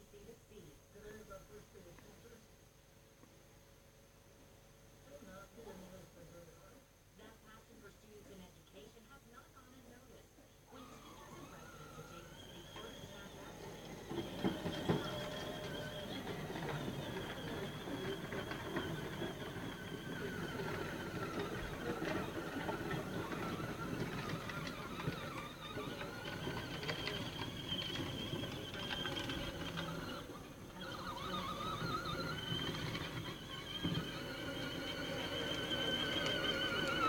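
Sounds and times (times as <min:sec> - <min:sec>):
ride-on toy electric motor whine: 0:10.7 - 0:37.0.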